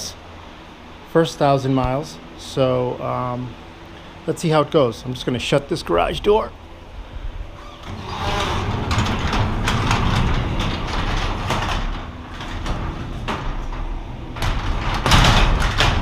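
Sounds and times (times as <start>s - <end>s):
garage door rolling closed: 7.2s - 16.0s.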